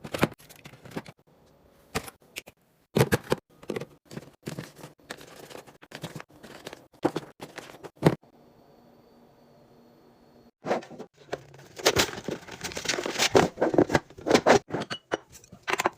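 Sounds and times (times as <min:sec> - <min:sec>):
packaging rustling: 0:03.6 - 0:08.2, 0:11.4 - 0:14.4
containers clacking and knocking: 0:11.2 - 0:15.9.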